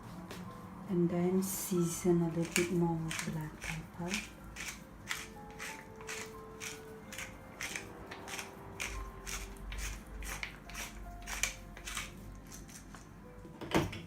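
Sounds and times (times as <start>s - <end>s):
pepper grinder grinding: 2.3s - 13.1s.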